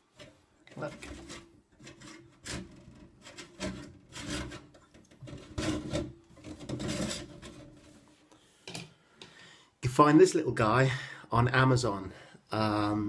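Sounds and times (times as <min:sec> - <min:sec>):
object rubbing and scraping: 0:00.1 - 0:08.2.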